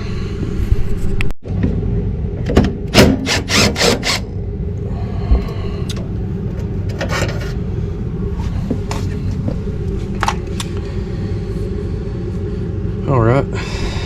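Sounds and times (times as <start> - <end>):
low rumble: 0.0 - 14.0
scraping on metal: 6.9 - 7.6.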